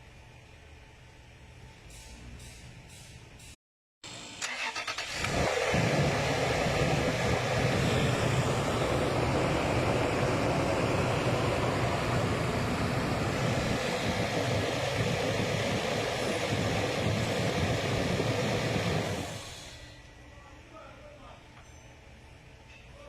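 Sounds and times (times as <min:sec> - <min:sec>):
car engine cranking and running: 0:04.4 - 0:19.8.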